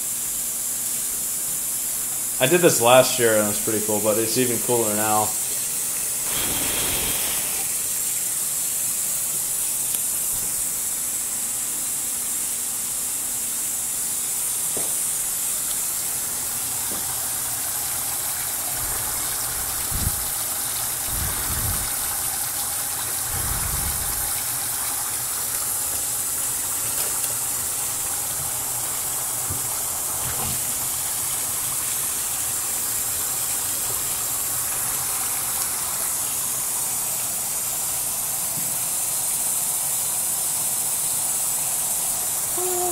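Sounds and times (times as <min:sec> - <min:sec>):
dry ice bubbling in water: 0:05.2 - 0:08.3, 0:15.4 - 0:28.3.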